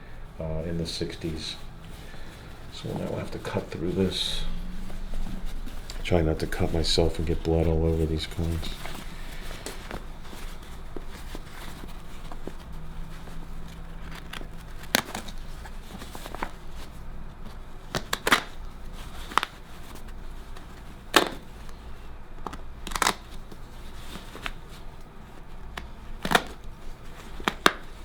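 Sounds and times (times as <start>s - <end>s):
bag handling noise: 0.0s - 28.0s.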